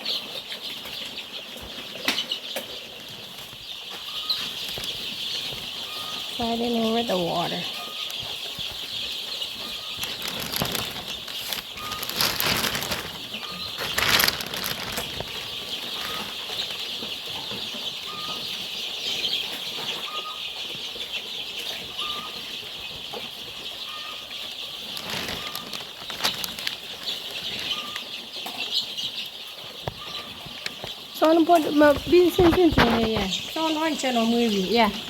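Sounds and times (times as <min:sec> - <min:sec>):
chicks peeping: 0:00.0 - 0:35.0
wing-flapping and scuffling: 0:08.1 - 0:16.7, 0:24.8 - 0:28.0, 0:30.6 - 0:33.6.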